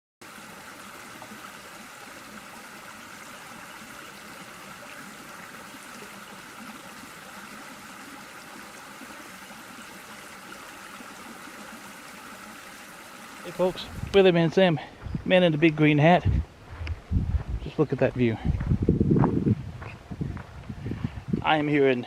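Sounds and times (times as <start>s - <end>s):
outdoor background hiss: 0.2s - 22.0s.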